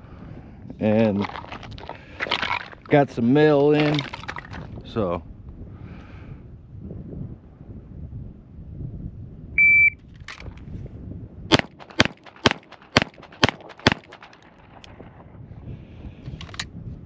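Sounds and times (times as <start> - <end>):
shot timer beep: 9.6 - 10.0
pistol shots: 11.5 - 15.0.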